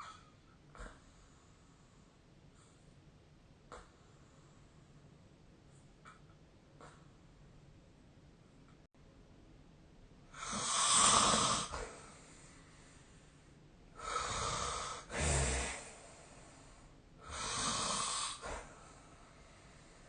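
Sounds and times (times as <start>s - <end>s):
person snoring: 10.4s - 12.2s, 14.0s - 16.2s, 17.2s - 18.7s.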